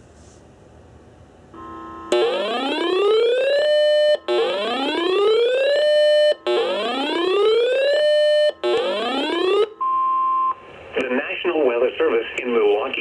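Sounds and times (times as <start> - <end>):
electronic whooping alarm tone: 1.6 - 10.6.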